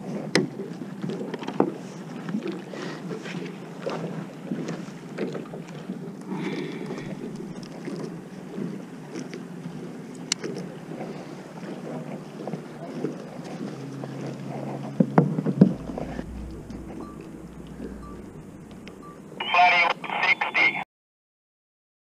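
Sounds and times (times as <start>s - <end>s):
wind on microphone: 6.5s - 8.8s, 14.7s - 19.4s.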